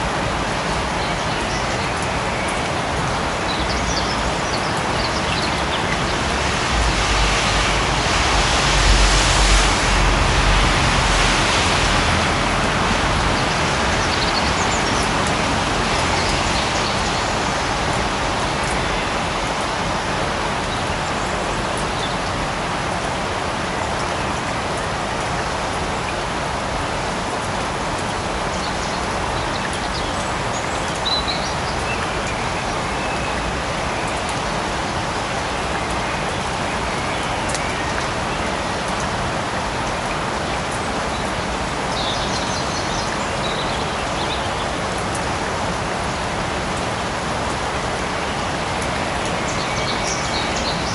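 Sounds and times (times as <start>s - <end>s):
rain falling: 0.0s - 50.9s
low rumble: 6.2s - 13.4s.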